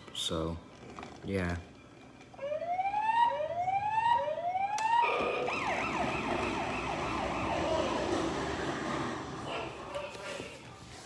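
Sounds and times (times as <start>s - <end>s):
toy police siren: 2.4s - 8.9s.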